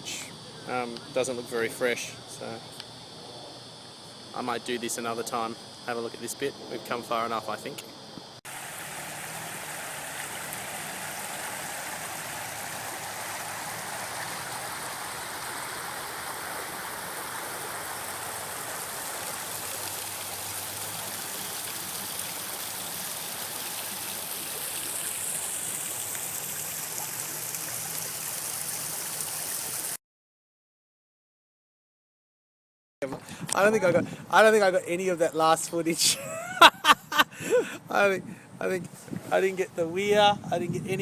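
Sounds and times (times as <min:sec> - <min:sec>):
water rushing over weir: 0:08.5 - 0:30.0.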